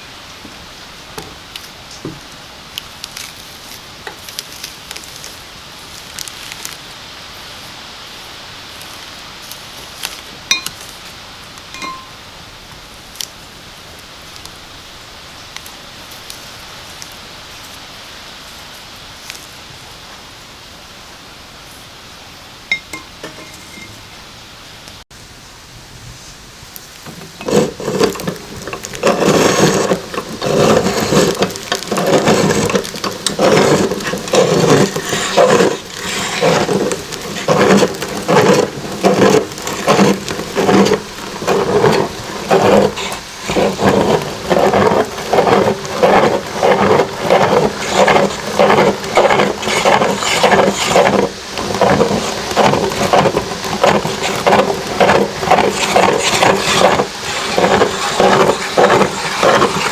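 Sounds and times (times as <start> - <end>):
meat grinder crunching and squelching: 3.0 - 6.9, 8.7 - 11.0, 27.0 - 59.9.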